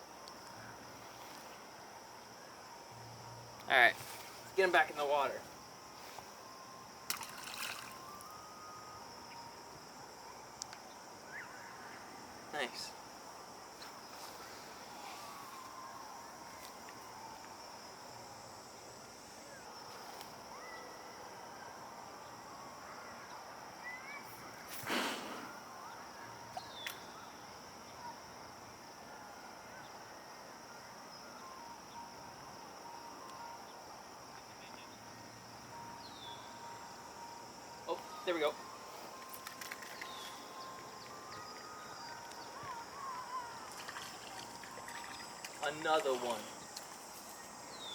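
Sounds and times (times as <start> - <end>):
crickets chirring: 0.0 - 47.9
insects droning: 0.0 - 47.9
fish splashing into water: 7.1 - 8.3, 43.6 - 45.7.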